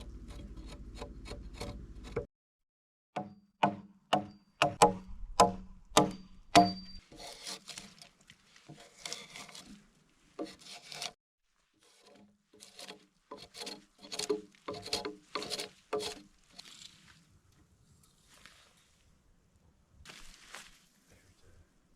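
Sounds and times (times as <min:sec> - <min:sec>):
rasping scraping strokes: 0:00.0 - 0:02.3, 0:04.8 - 0:17.3
axe chopping into log: 0:03.2 - 0:07.0.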